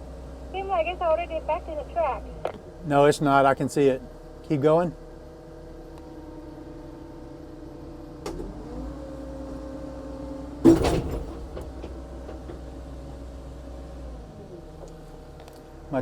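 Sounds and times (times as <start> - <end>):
diesel engine running: 0.0 - 16.0
loud metal clunk: 10.6 - 12.8.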